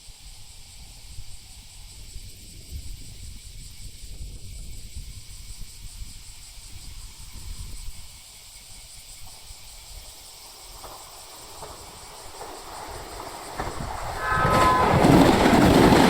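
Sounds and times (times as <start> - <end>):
insects hissing: 0.0 - 16.0
wind buffeting microphone: 0.6 - 8.2, 11.6 - 16.0
approaching electric train: 9.2 - 16.0.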